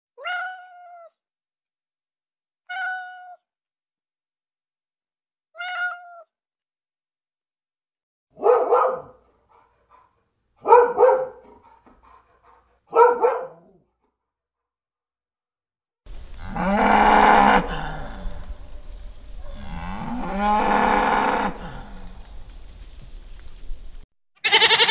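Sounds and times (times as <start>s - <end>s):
cat meowing: 0.2s - 1.2s, 2.7s - 3.4s, 5.6s - 6.4s, 24.4s - 24.9s
dog barking: 8.3s - 13.9s, 19.4s - 19.7s.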